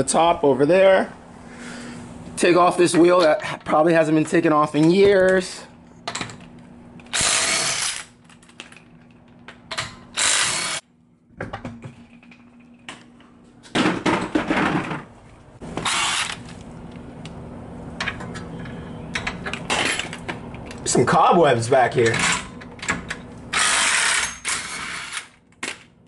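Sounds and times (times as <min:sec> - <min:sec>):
impact tool loosening lug nuts: 0:15.8 - 0:16.5.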